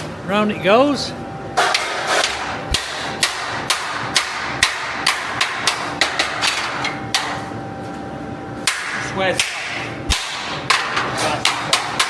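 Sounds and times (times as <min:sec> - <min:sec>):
hammer striking hot iron: 0:01.6 - 0:07.4, 0:08.6 - 0:12.0.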